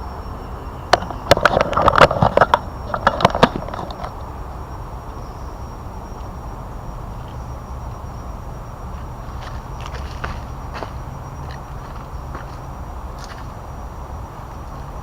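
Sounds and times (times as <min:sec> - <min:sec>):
outdoor background: 0:00.0 - 0:15.0
dry leaves crackling underfoot: 0:08.9 - 0:15.0.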